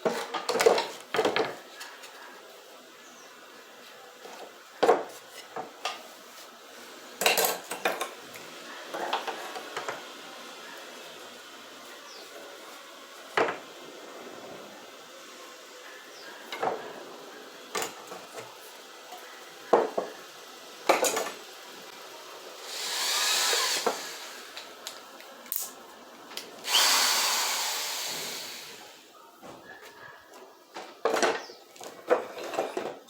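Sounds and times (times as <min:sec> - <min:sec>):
handheld power tool: 0:07.2 - 0:12.3, 0:17.5 - 0:25.8, 0:26.4 - 0:29.0.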